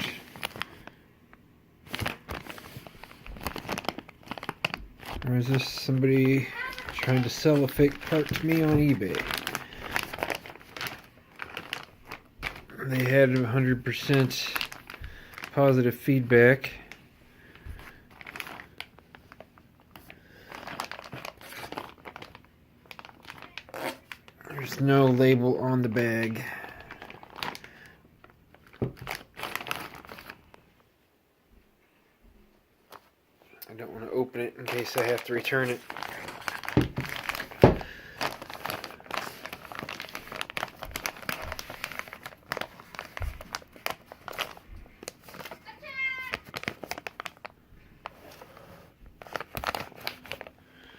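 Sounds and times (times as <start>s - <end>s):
plastic bag crinkling: 0.0s - 1.0s, 1.8s - 30.7s, 34.5s - 50.9s
dull thumps: 36.7s - 37.9s.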